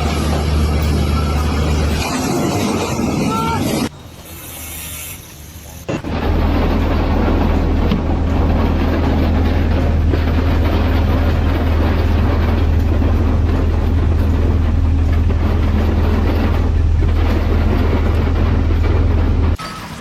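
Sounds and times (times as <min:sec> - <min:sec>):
low engine rumble: 0:00.0 - 0:04.6, 0:05.2 - 0:19.6.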